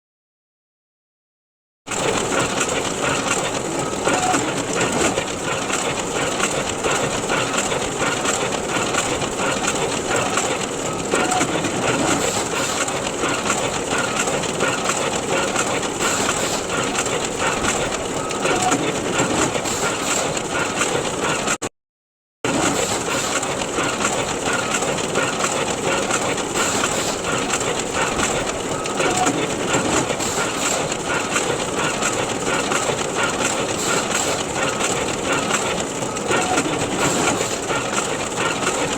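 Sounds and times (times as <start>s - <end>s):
photocopier whirring: 2.0s - 7.2s, 22.5s - 38.9s.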